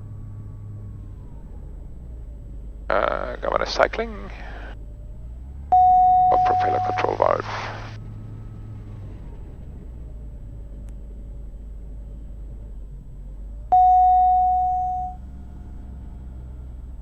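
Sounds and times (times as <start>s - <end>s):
cockpit alert tone: 5.8s - 7.2s, 13.7s - 15.2s
aircraft piston engine: 6.7s - 8.0s.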